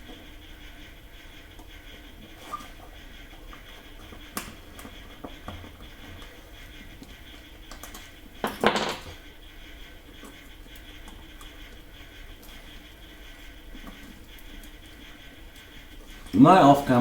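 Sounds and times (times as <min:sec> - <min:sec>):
small parts clicking and tapping: 0:07.7 - 0:09.2.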